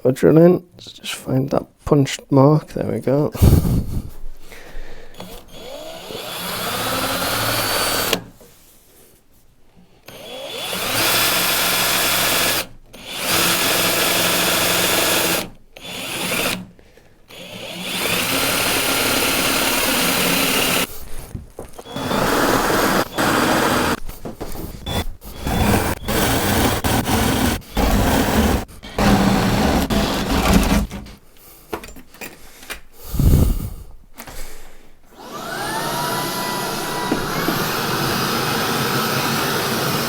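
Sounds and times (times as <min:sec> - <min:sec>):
power drill boring into wood: 0:05.2 - 0:08.4, 0:10.1 - 0:16.7, 0:17.3 - 0:31.2, 0:35.2 - 0:40.0.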